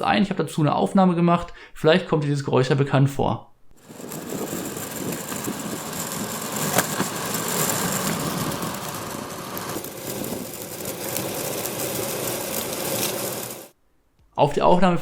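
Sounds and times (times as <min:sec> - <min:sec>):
longboard wheels rolling: 0:03.8 - 0:13.8.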